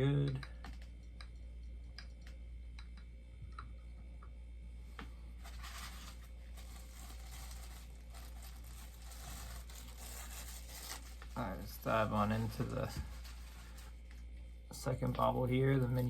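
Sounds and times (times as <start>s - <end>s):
packaging rustling and crinkling: 5.4s - 14.3s.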